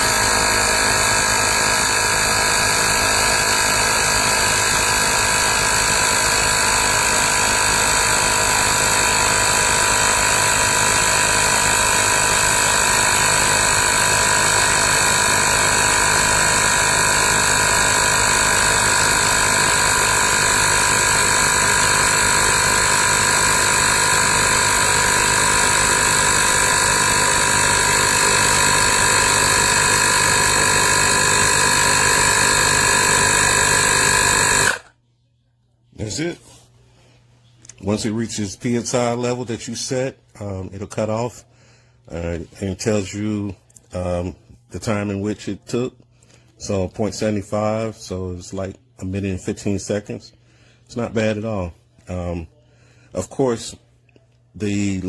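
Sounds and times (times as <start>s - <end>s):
tire inflator compressor whine: 0.0s - 35.0s.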